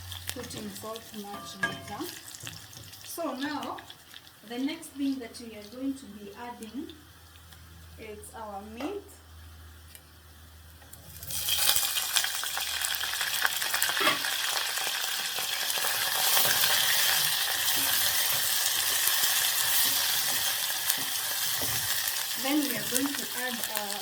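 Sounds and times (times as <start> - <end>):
food sizzling in hot oil: 0.0 - 4.9, 11.0 - 24.0
spoon stirring clicks and scrapes: 16.2 - 22.3.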